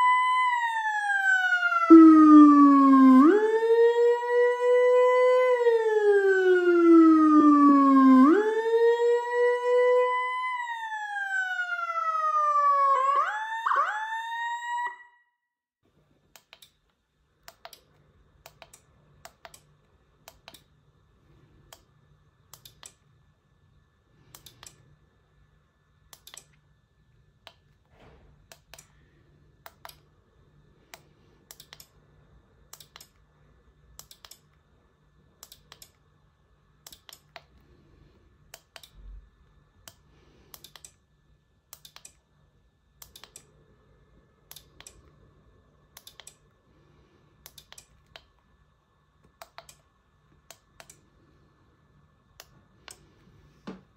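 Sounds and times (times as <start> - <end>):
electronic siren wailing and yelping: 0.0 - 15.4
faint electrical hum: 15.8 - 53.9.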